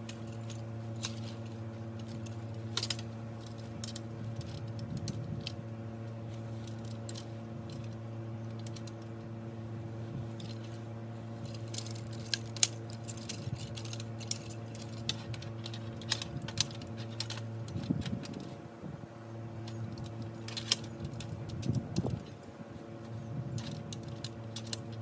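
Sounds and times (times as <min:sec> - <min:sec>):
steady low hum: 0:00.0 - 0:25.0
metallic clicks of hardware handled: 0:11.5 - 0:18.5, 0:19.6 - 0:22.3, 0:23.6 - 0:25.0.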